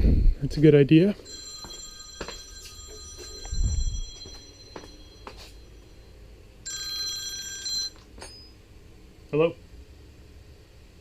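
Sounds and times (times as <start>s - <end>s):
electronic phone ringtone: 1.2s - 8.0s.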